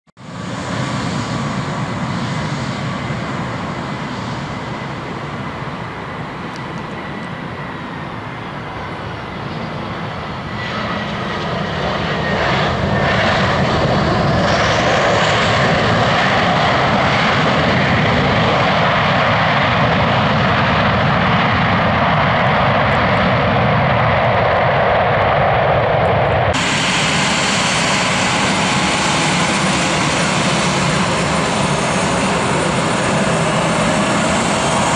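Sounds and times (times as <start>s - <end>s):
jet engines rushing and whining: 0.2s - 34.9s.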